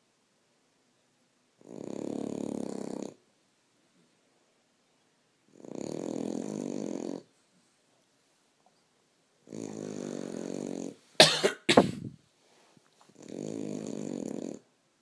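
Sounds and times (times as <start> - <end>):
dog snoring: 1.6 - 3.2, 5.5 - 7.3, 9.4 - 11.0, 13.2 - 14.7.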